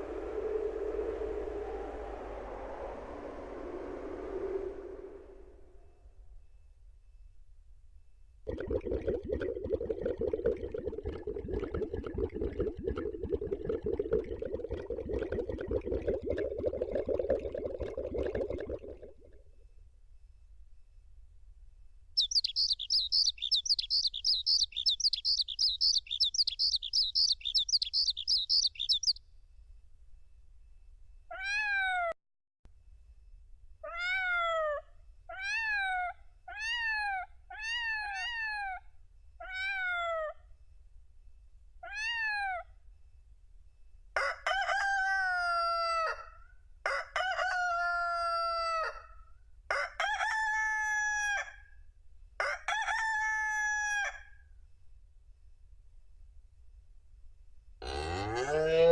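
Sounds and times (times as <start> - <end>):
cat meows sound effect: 31.3 - 32.1, 33.9 - 38.8, 39.4 - 40.4, 41.8 - 42.6
rooster crows sound effect: 44.2 - 51.7, 52.4 - 54.3, 57.8 - 58.9.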